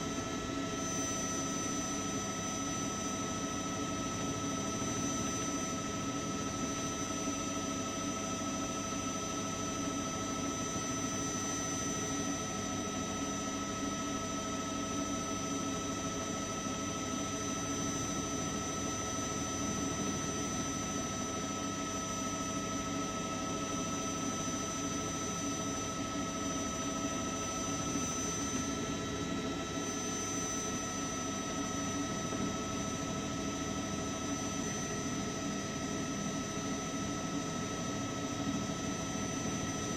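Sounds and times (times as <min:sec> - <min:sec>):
helicopter turbine engine whine: 0:00.0 - 0:39.9.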